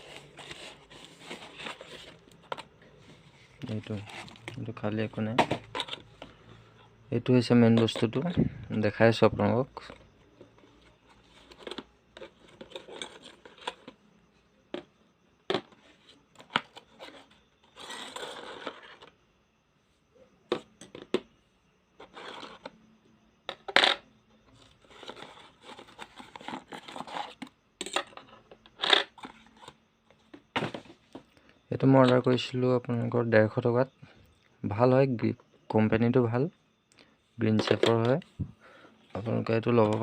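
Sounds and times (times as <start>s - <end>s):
packaging scraping: 0.0s - 6.1s, 16.4s - 19.1s, 24.5s - 27.5s.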